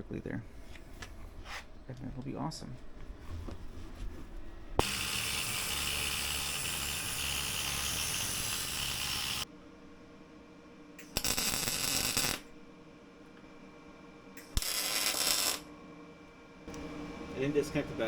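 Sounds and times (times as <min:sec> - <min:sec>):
welding arc crackling and hissing: 0:04.8 - 0:09.4, 0:11.0 - 0:12.5, 0:14.4 - 0:15.6.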